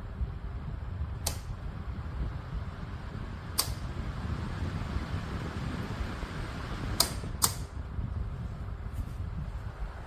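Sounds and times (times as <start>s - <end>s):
floor fan air rumble: 0.0s - 10.0s
light click: 1.2s - 1.5s, 3.6s - 3.9s, 7.0s - 7.7s.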